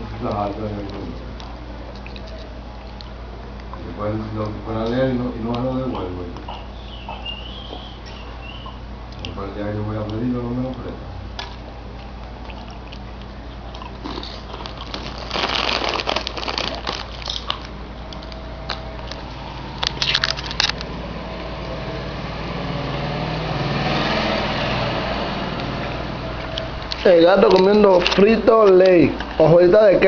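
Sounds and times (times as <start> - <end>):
cat crunching crispy food: 0.8 - 3.0, 13.7 - 20.8
vehicle passing: 19.2 - 26.9.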